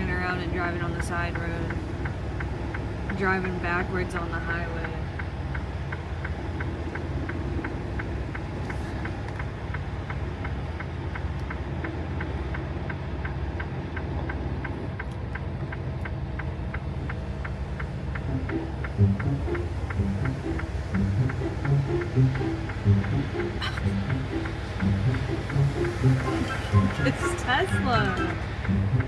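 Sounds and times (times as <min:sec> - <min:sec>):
diesel truck engine idling: 0:00.0 - 0:29.0
light even ticking: 0:00.0 - 0:29.0
music: 0:18.2 - 0:29.0.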